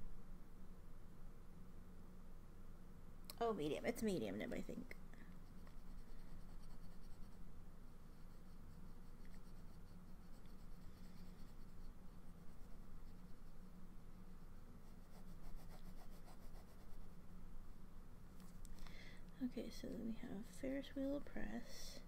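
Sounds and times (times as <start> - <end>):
faint low hum: 0.0 - 22.0
pen scratching on paper: 5.4 - 7.4, 8.1 - 13.6, 14.8 - 17.2.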